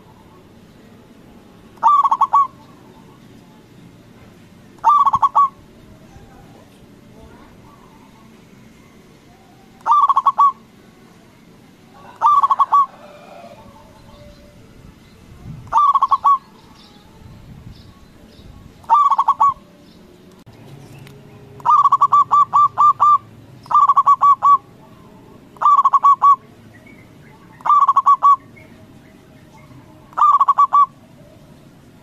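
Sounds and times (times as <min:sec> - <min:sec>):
dove cooing: 0:01.8 - 0:03.6, 0:04.8 - 0:10.7, 0:11.9 - 0:14.6, 0:15.6 - 0:16.9, 0:18.8 - 0:19.7, 0:21.5 - 0:31.7.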